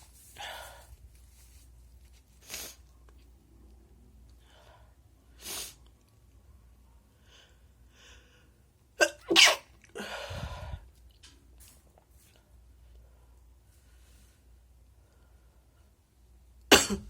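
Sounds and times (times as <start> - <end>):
faint in-breaths: 0.2 - 1.1, 4.3 - 5.8, 7.1 - 8.7, 10.0 - 10.9, 12.5 - 16.0
person sneezing: 9.0 - 9.7
loud rushing breath: 10.0 - 10.8.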